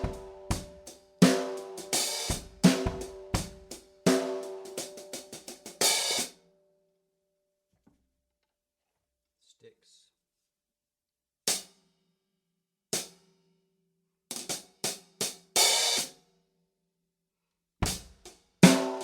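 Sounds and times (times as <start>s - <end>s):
hi-hat cymbal hits: 0.0s - 6.2s
open hi-hat wash: 1.2s - 3.5s
deep drum thump: 17.8s - 18.0s.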